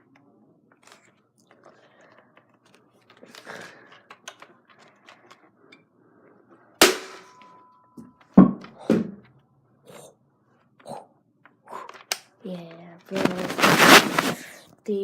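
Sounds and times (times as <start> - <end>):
toy blaster firing crack: 6.8 - 7.3.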